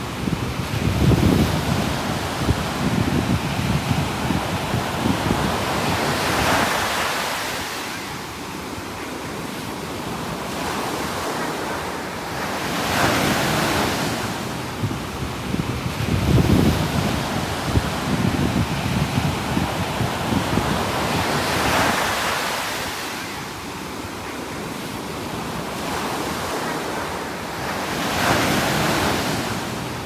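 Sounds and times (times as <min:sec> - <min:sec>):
wind rumble on microphone: 0:00.0 - 0:08.4, 0:12.2 - 0:23.0, 0:27.5 - 0:30.0
ocean waves breaking: 0:00.0 - 0:30.0.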